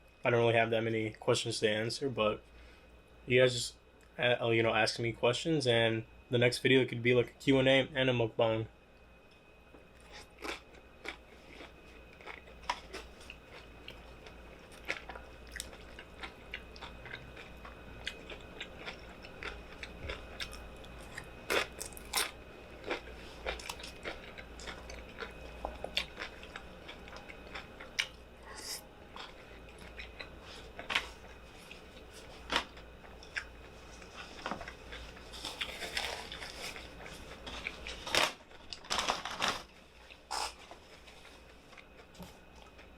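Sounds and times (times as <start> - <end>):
low steady hum: 0.0 - 42.9
person chewing crunchy food: 10.0 - 42.9.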